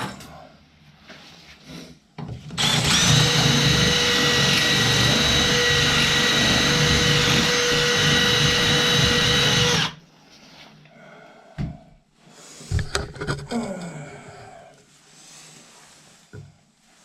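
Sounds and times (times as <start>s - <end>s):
electric drill whining: 2.6s - 10.0s.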